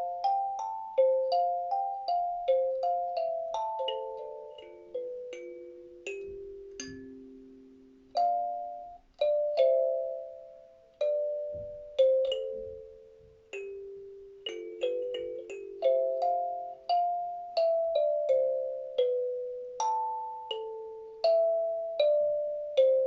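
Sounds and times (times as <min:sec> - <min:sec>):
kalimba notes: 0:00.0 - 0:23.0.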